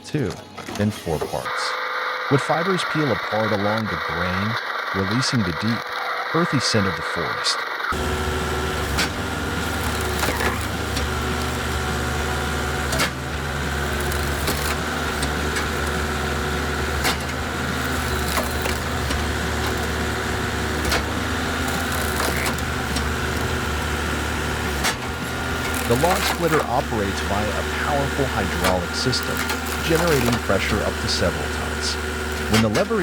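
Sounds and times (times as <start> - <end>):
log splitter machine hum: 1.4 - 33.0
wood cracking and splitting: 8.0 - 30.6.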